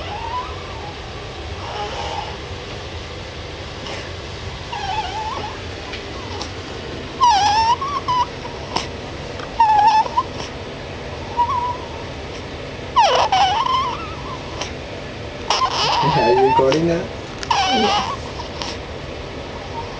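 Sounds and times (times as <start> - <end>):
baby squeaking and whimpering: 0.0 - 1.0, 1.6 - 2.4, 4.7 - 5.6, 7.2 - 8.9, 9.6 - 10.5, 13.0 - 14.7, 15.5 - 16.8, 17.5 - 18.8.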